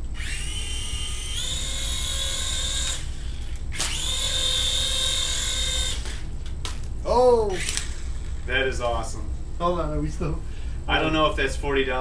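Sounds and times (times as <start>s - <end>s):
toy rotor motors whining: 0.1s - 6.3s, 7.1s - 9.1s.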